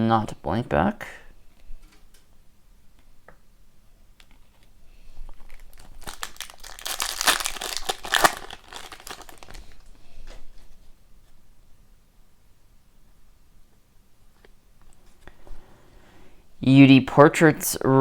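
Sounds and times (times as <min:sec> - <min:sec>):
cards clicking and rustling: 0:05.3 - 0:09.6
foil wrapper crinkling and tearing: 0:05.3 - 0:09.9.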